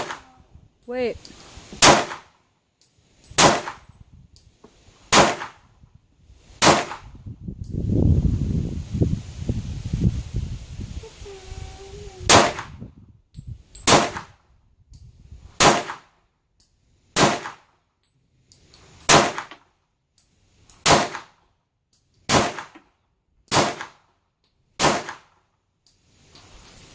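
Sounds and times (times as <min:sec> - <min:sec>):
pistol shots: 0:01.8 - 0:02.3, 0:03.4 - 0:03.8, 0:05.1 - 0:05.6, 0:13.9 - 0:14.3, 0:15.6 - 0:16.0, 0:17.2 - 0:17.6, 0:19.1 - 0:19.5, 0:20.8 - 0:21.3, 0:22.3 - 0:22.7, 0:23.5 - 0:24.0, 0:24.8 - 0:25.3.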